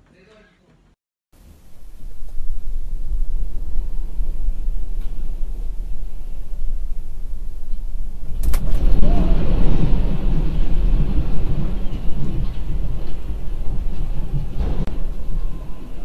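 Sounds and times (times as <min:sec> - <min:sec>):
building rattling: 0:01.4 - 0:16.0
earthquake rumble: 0:01.4 - 0:16.0
sharp crack: 0:08.2 - 0:13.4.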